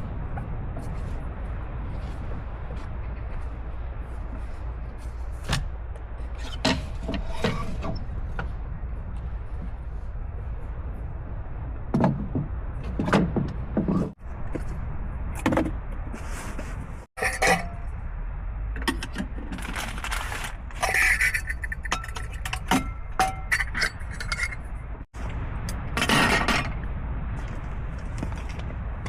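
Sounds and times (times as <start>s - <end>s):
low rumbling background noise: 0.0s - 29.0s.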